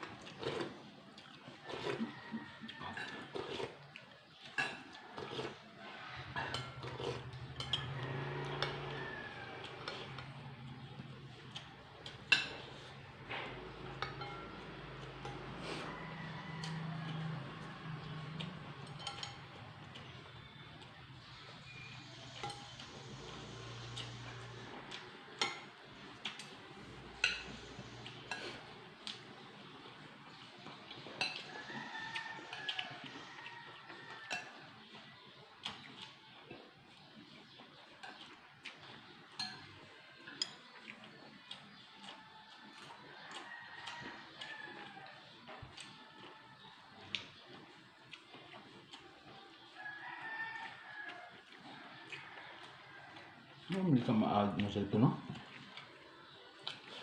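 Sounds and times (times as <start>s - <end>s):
cutlery clinking on plates: 2.8s - 3.7s, 4.4s - 5.6s, 6.2s - 8.9s, 11.5s - 15.9s, 18.4s - 20.1s, 21.7s - 29.2s, 30.7s - 33.0s, 34.1s - 34.6s, 38.0s - 40.9s.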